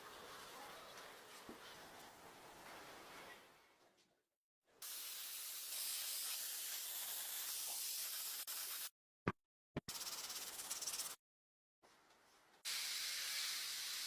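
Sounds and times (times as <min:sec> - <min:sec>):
spraying hiss: 0:04.8 - 0:08.9, 0:12.7 - 0:14.0.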